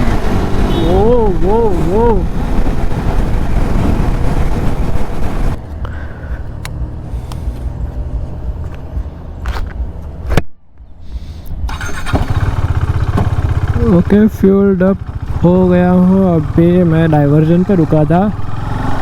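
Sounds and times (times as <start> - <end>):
wind rush on microphone: 0.0 - 5.8
motorcycle engine hum: 0.0 - 10.3, 11.5 - 19.0.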